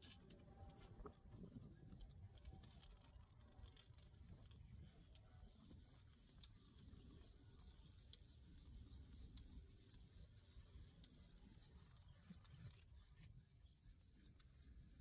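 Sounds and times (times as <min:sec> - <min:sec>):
soft ticks: 0:02.0 - 0:07.3.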